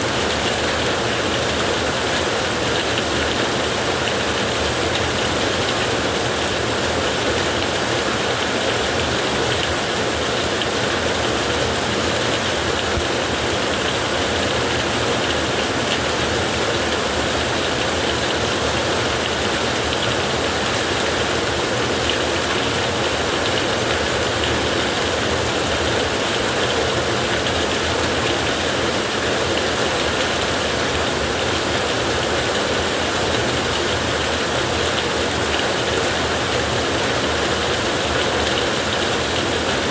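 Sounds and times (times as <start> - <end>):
heavy rain on a tin roof: 0.0 - 39.9.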